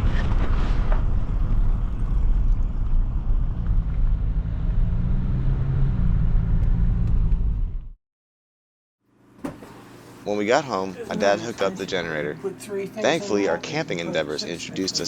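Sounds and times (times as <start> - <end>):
car engine rumble: 0.0 - 8.0
road noise: 2.9 - 7.9.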